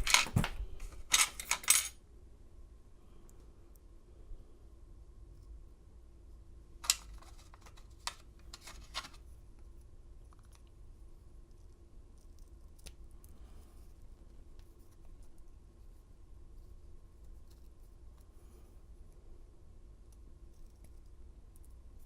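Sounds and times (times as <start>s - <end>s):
metal tools clicking on padlock: 1.1s - 1.9s.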